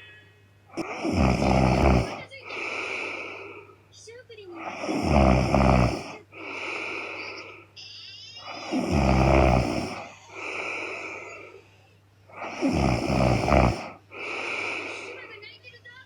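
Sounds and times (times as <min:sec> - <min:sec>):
woman snoring: 0:00.8 - 0:03.7, 0:04.6 - 0:07.6, 0:08.4 - 0:11.6, 0:12.3 - 0:15.3
breathy breaths: 0:00.8 - 0:03.8, 0:04.5 - 0:07.8, 0:08.5 - 0:15.4.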